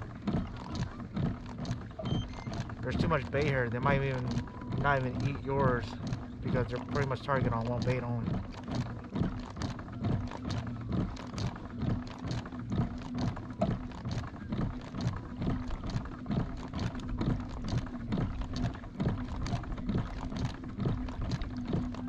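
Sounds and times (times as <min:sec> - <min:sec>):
boat motor humming: 0:00.0 - 0:22.0
water slapping hull: 0:00.0 - 0:22.0.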